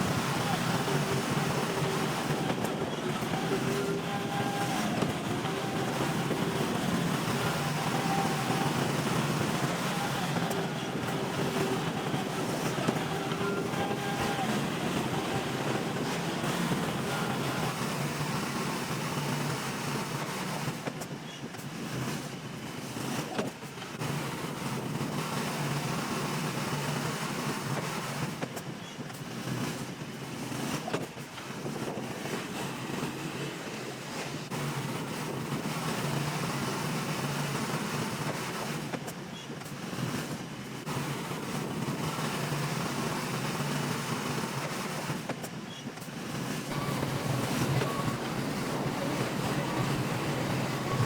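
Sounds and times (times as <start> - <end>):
bulldozer diesel engine running: 0.0 - 20.3, 46.7 - 51.0.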